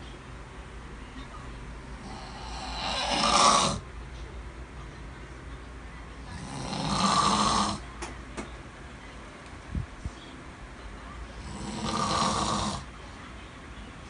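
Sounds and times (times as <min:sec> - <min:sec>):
man snoring: 0:02.0 - 0:03.8, 0:06.3 - 0:07.8, 0:11.4 - 0:12.9.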